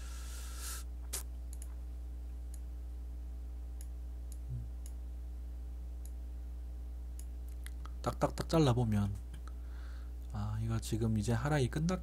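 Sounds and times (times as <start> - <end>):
low electrical hum: 0.0 - 12.0
computer mouse clicks: 1.5 - 1.8.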